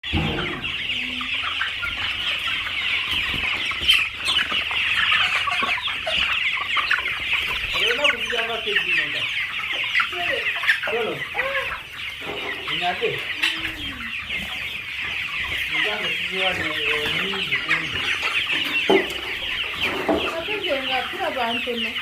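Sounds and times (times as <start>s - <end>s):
chickens chattering: 0.0s - 22.0s
chickens clucking: 0.0s - 22.0s.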